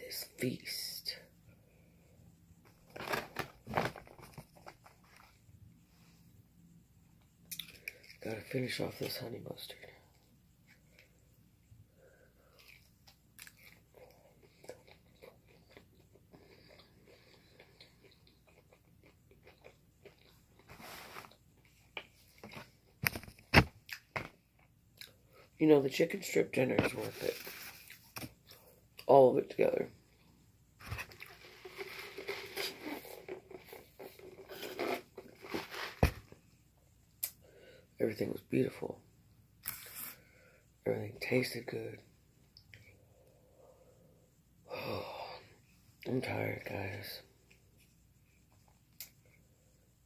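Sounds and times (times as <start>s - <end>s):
person chewing food: 12.4s - 22.6s.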